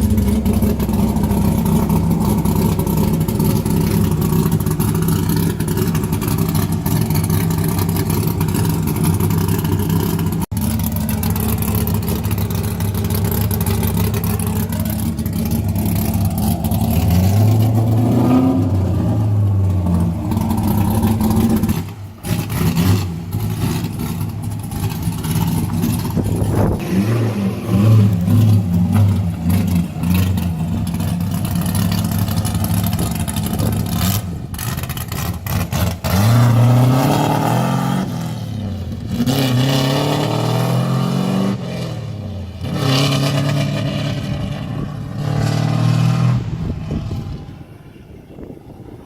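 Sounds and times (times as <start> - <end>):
car engine revving: 0.0 - 47.6.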